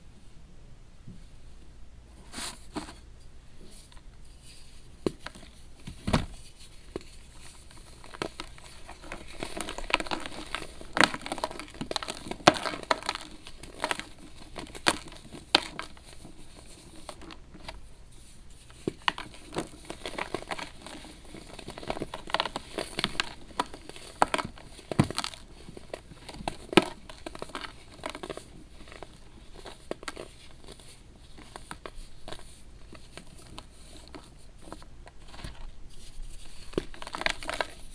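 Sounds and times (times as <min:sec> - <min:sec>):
baking soda crunching: 0:07.7 - 0:16.0.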